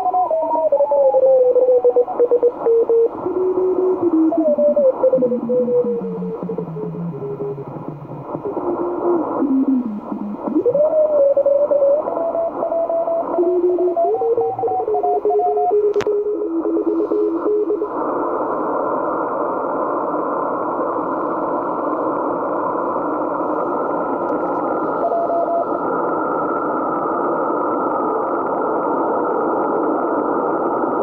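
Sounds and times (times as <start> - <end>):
radio whistling tones: 0.0 - 18.5, 23.7 - 26.2
radio band hiss: 0.0 - 31.0.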